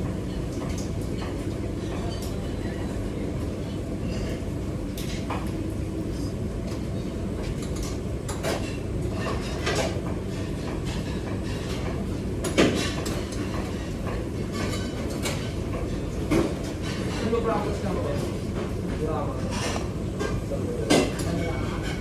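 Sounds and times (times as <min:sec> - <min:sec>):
clatter of dishes and pans: 0:06.7 - 0:22.0.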